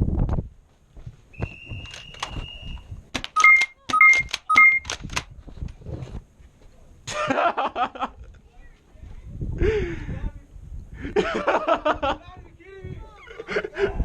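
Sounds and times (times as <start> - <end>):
sharp clicks: 3.2 - 5.3
long electronic beep: 3.4 - 4.8
short two-tone beeps: 3.4 - 4.9.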